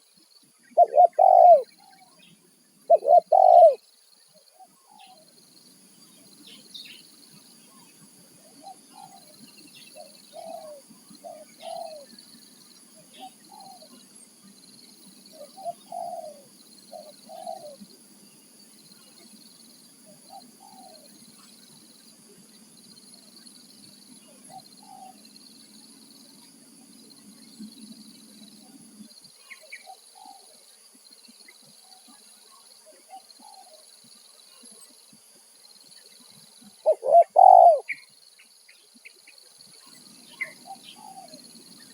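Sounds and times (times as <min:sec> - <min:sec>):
insects buzzing: 0:00.0 - 0:41.9
doves cooing: 0:00.8 - 0:02.0, 0:02.9 - 0:03.8, 0:10.0 - 0:12.1, 0:15.4 - 0:17.8, 0:36.8 - 0:38.0, 0:40.4 - 0:41.4.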